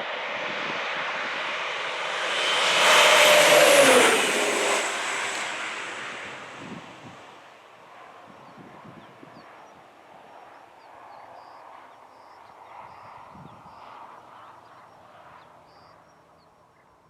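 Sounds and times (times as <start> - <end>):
steady rushing noise: 0.0 - 7.7.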